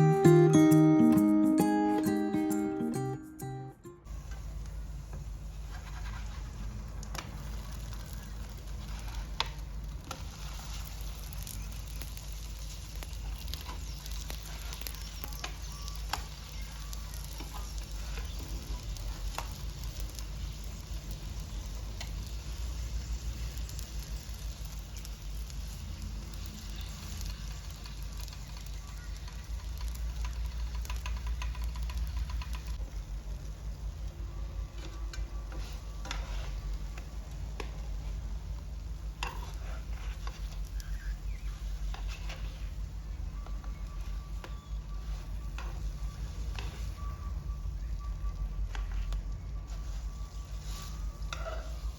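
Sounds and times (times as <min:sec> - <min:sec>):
small clicks and taps: 0:28.2 - 0:32.8.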